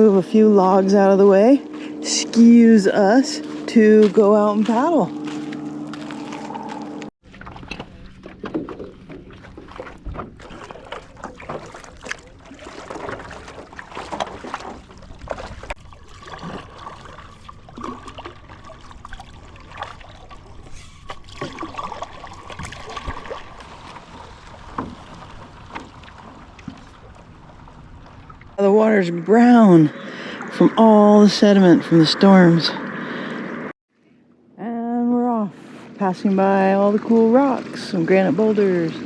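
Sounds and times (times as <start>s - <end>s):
paddle blades splashing: 0.0s - 32.4s, 35.6s - 39.0s
water sloshing and trickling: 0.0s - 32.7s, 35.6s - 39.0s.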